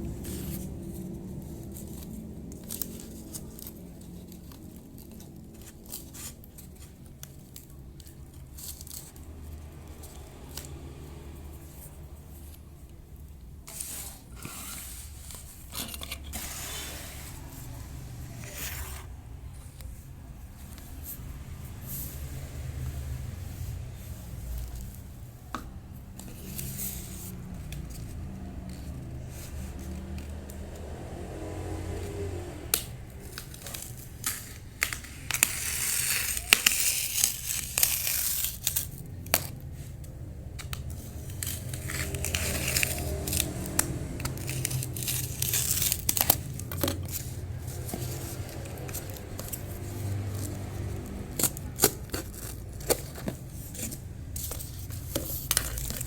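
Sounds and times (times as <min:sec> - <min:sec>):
cardboard tearing and crinkling: 0:33.2 - 0:39.9, 0:40.7 - 0:56.0.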